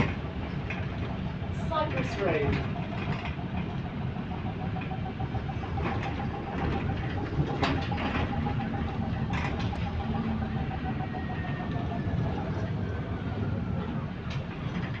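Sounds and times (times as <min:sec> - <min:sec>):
bus engine rumbling: 0:00.0 - 0:15.0
faint rapid ticking tone: 0:02.6 - 0:12.0.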